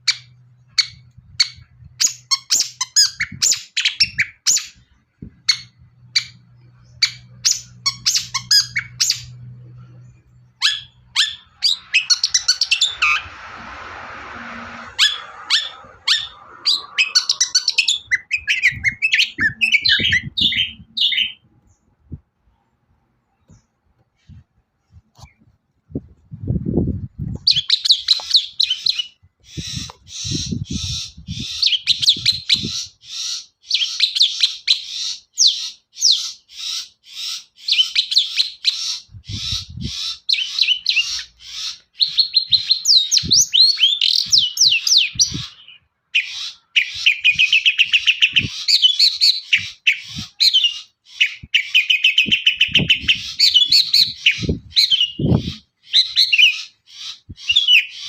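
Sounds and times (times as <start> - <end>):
shrike singing chattering song: 5.4 - 13.8, 14.4 - 21.4.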